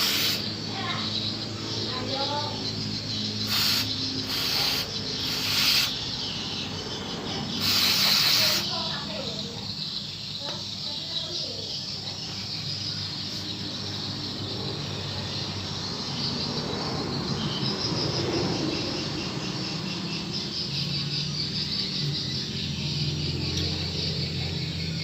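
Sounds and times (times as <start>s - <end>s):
high-pitched insect chirring: 0.0s - 25.0s.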